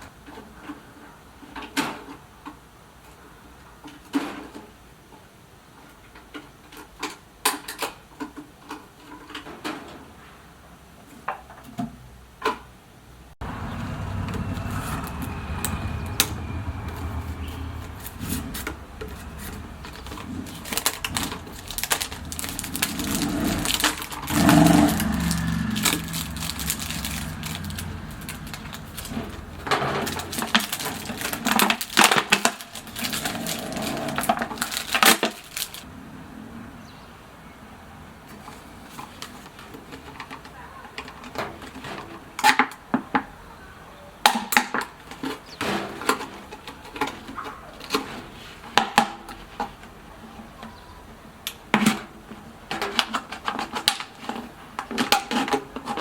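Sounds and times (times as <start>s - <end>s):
low rumble: 13.4s - 32.0s
objects being handled: 18.0s - 35.9s.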